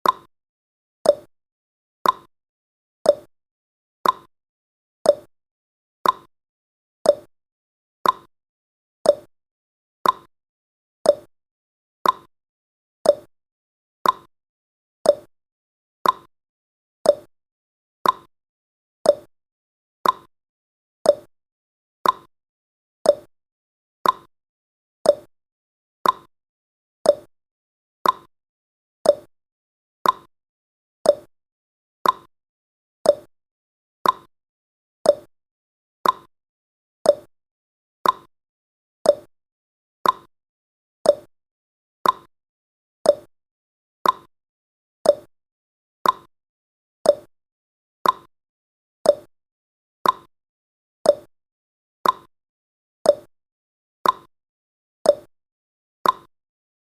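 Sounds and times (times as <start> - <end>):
timer ticking: 0.0 - 0.3, 1.1 - 1.3, 2.0 - 2.3, 3.1 - 3.3, 4.0 - 4.3, 5.1 - 5.3, 6.0 - 6.3, 7.1 - 7.3, 8.0 - 8.3, 9.1 - 9.3, 10.0 - 10.3, 11.1 - 11.3, 12.0 - 12.3, 13.1 - 13.3, 14.0 - 14.3, 15.1 - 15.3, 16.0 - 16.3, 17.1 - 17.3, 18.0 - 18.3, 19.1 - 19.3, 20.0 - 20.3, 21.1 - 21.3, 22.0 - 22.3, 23.1 - 23.3, 24.0 - 24.3, 25.1 - 25.3, 26.0 - 26.3, 27.1 - 27.3, 28.0 - 28.3, 29.0 - 29.3, 30.0 - 30.3, 31.1 - 31.3, 32.0 - 32.3, 33.1 - 33.3, 34.0 - 34.3, 35.1 - 35.3, 36.0 - 36.3, 37.1 - 37.3, 38.0 - 38.3, 39.1 - 39.3, 40.0 - 40.3, 41.1 - 41.3, 42.0 - 42.3, 43.1 - 43.3, 44.0 - 44.3, 45.1 - 45.3, 46.0 - 46.3, 47.1 - 47.3, 48.0 - 48.3, 49.1 - 49.3, 50.0 - 50.3, 51.1 - 51.3, 52.0 - 52.3, 53.1 - 53.3, 54.0 - 54.3, 55.1 - 55.3, 56.0 - 56.3.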